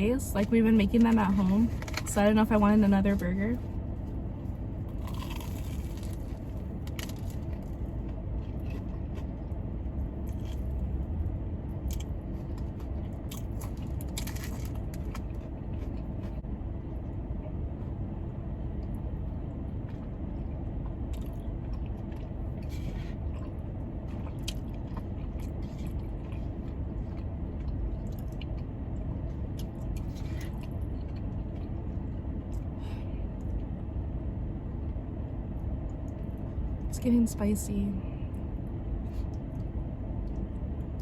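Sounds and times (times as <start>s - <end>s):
car air conditioning blower hum: 0.0s - 41.0s
chewing and crunchy bites: 3.8s - 32.8s.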